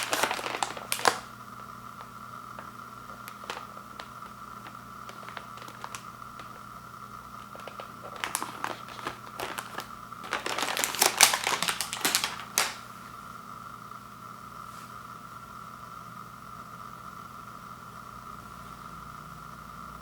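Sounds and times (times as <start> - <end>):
plastic package crinkling: 0.0 - 12.9.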